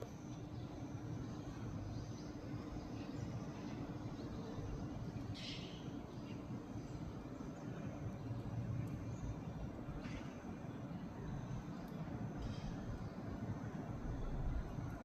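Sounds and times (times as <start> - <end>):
low background rumble: 0.0 - 15.0
bird call: 5.3 - 6.4.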